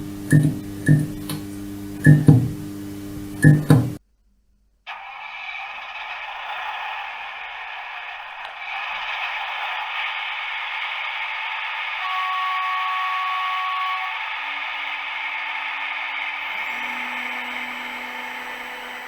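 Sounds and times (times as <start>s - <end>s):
two steady tones: 0.0s - 4.0s, 11.0s - 19.0s.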